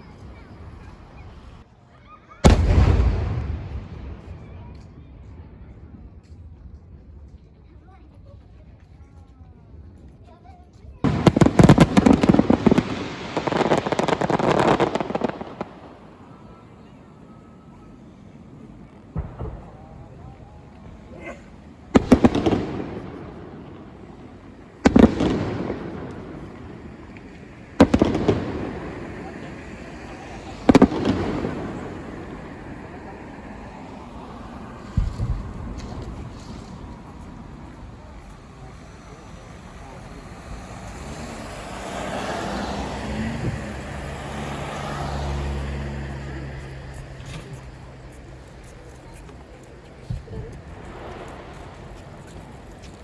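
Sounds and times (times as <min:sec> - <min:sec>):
fireworks rumble: 0:00.0 - 0:53.0
cluster of fireworks pops: 0:02.4 - 0:07.4, 0:10.8 - 0:16.4, 0:18.8 - 0:21.0, 0:21.9 - 0:32.9, 0:33.7 - 0:40.3, 0:47.0 - 0:53.0
fireworks bursting with bangs: 0:02.4 - 0:07.4, 0:10.8 - 0:53.0
vehicle driving past: 0:27.4 - 0:48.7.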